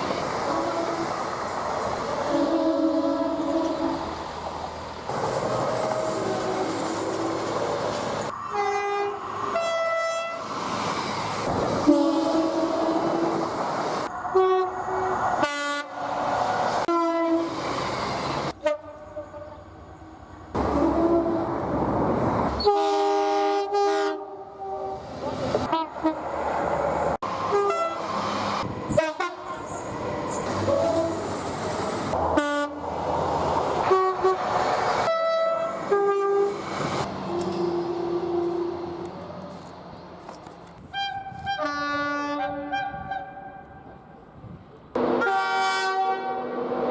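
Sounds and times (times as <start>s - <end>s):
train running noise: 0.0s - 41.8s
two-note train horn blasts: 45.0s - 46.5s.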